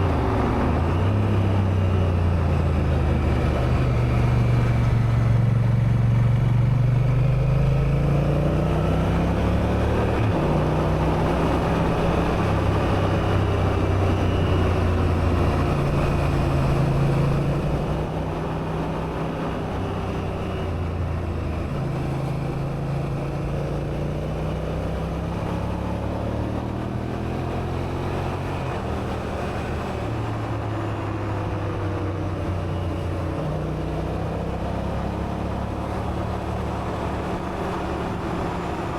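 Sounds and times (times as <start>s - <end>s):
road and wind rush: 0.0s - 38.9s.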